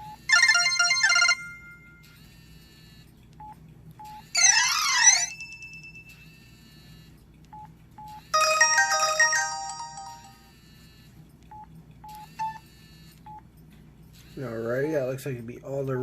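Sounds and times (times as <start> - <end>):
chiming ringtone tune: 0.0 - 2.5, 4.1 - 6.8, 8.3 - 10.9
phone beeps: 3.4 - 13.4.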